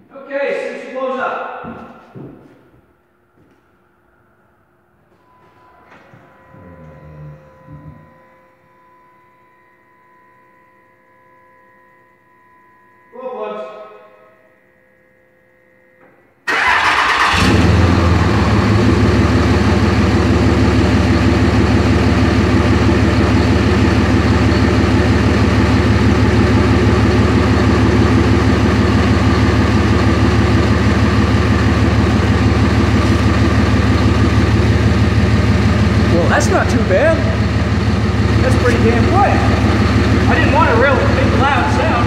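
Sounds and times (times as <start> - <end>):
diesel engine starting and idling: 16.4 - 42.0.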